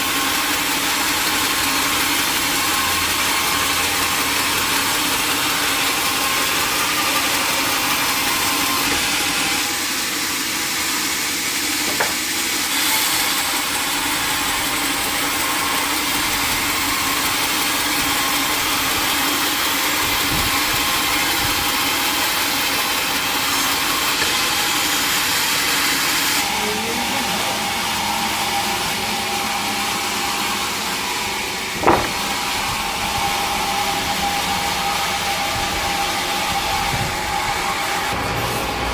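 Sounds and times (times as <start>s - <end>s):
sawmill machinery running: 0.0s - 38.9s
sharp knocks: 11.8s - 12.3s, 31.8s - 32.5s.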